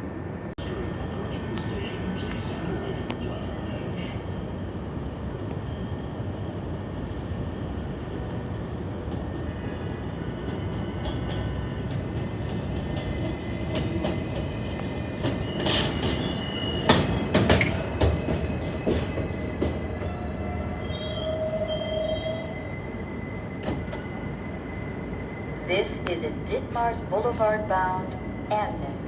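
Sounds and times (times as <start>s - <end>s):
subway train rumble: 0.0s - 29.0s
wheels clacking over rail joints: 10.5s - 20.1s
high wheel squeal: 13.4s - 25.7s.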